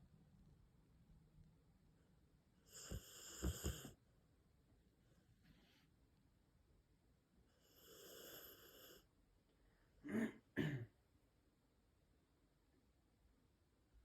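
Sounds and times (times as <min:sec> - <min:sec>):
puppy snoring: 0:02.7 - 0:04.0, 0:07.6 - 0:09.1.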